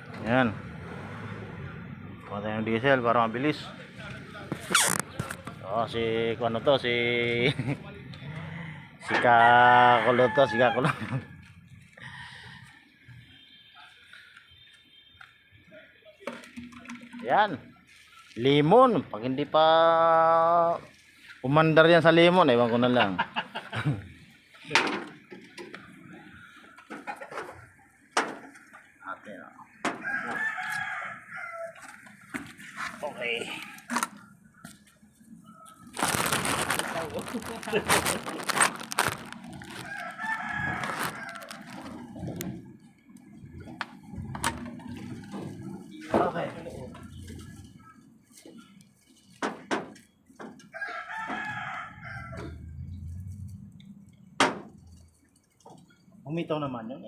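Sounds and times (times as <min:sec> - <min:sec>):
rooster crowing: 0:08.4 - 0:11.4, 0:29.9 - 0:31.9, 0:39.7 - 0:41.7, 0:50.6 - 0:52.8.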